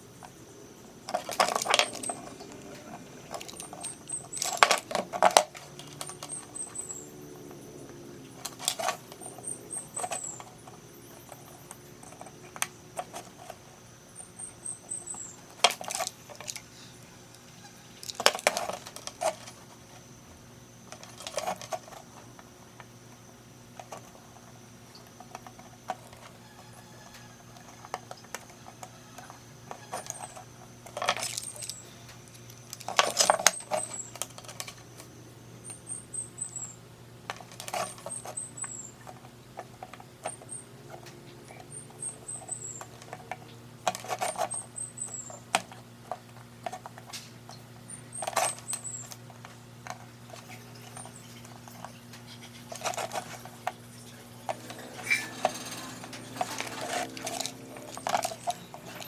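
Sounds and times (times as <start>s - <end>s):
steady low hum: 0.0s - 27.6s, 28.2s - 59.0s
metal parts clinking: 1.1s - 7.0s, 8.4s - 12.3s, 15.1s - 19.6s, 27.2s - 34.8s, 52.7s - 59.0s.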